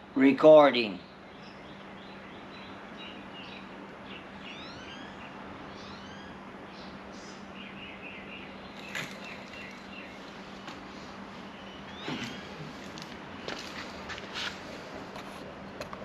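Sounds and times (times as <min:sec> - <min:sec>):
steady low hum: 0:00.0 - 0:16.0
birds chirping: 0:00.9 - 0:15.1.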